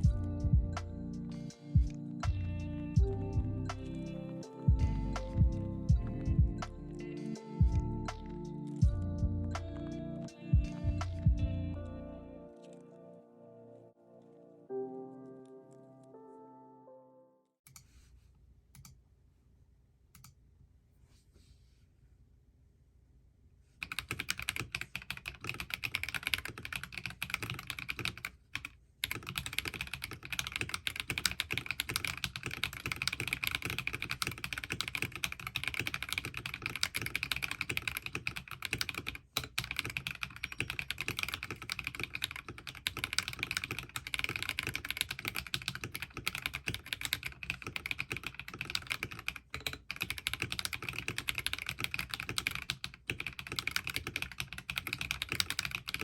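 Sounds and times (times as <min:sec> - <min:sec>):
mechanical keyboard typing: 0:23.8 - 0:56.0.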